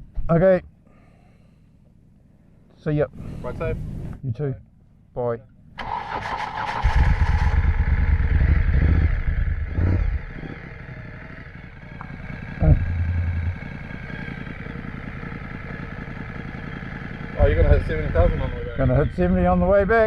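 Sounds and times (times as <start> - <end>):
motorcycle engine revving: 5.8 - 20.0.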